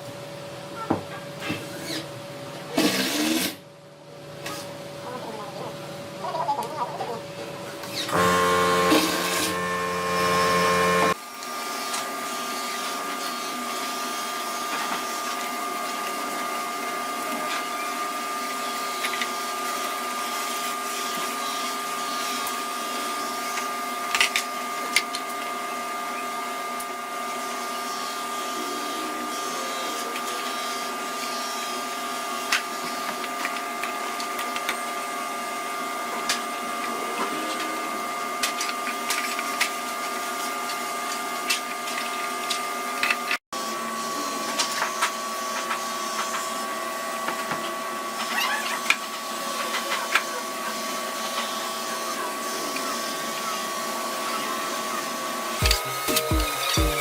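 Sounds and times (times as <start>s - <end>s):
small electric motor whining: 7.8s - 16.4s, 48.0s - 57.0s
deep loud machine sound: 8.1s - 11.2s.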